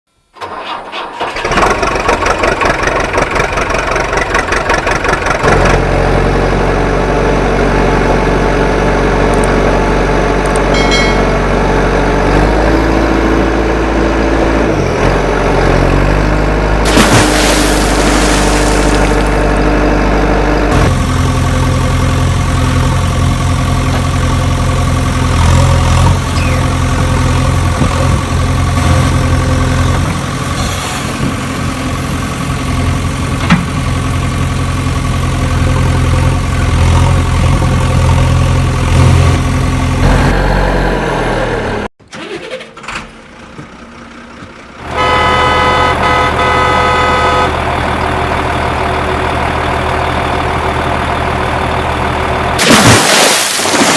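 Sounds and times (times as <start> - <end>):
vehicle engine running: 1.3 - 41.9, 43.1 - 52.6
higher-pitched engine tone: 7.1 - 14.9, 26.0 - 26.8, 44.8 - 49.0.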